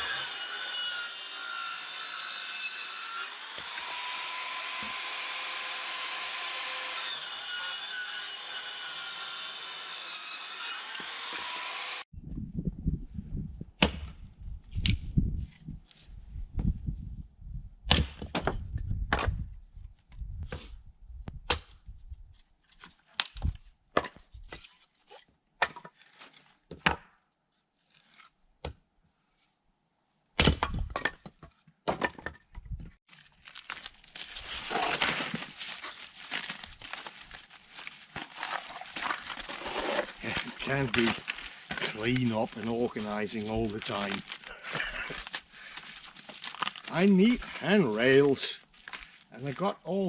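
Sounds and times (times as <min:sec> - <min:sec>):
rustling: 0:33.1 - 0:49.6.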